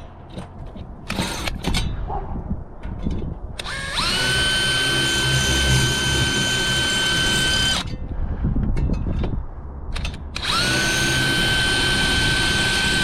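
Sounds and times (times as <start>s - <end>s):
power drill running: 3.6s - 7.9s, 10.4s - 13.0s.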